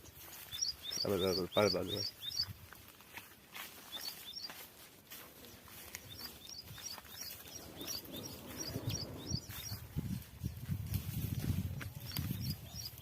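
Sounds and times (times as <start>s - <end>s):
bird chirping: 0.0s - 2.6s, 3.8s - 4.6s, 5.4s - 9.9s, 12.0s - 13.0s
low rustle: 5.2s - 12.4s.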